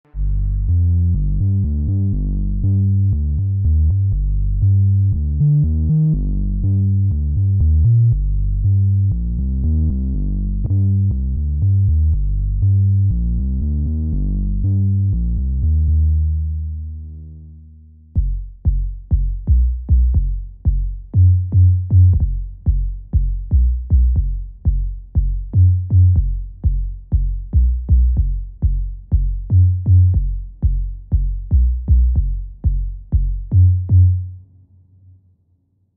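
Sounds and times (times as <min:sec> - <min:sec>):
deep synth bassline: 0:00.0 - 0:34.5
deep kick drums: 0:18.2 - 0:34.3.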